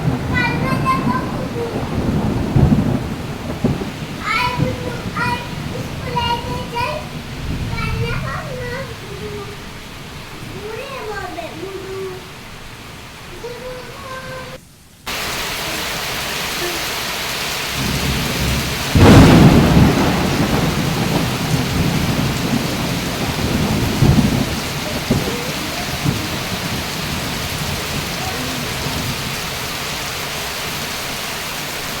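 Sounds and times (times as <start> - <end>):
heavy rain: 0.0 - 32.0
thunder rumbling: 0.0 - 32.0.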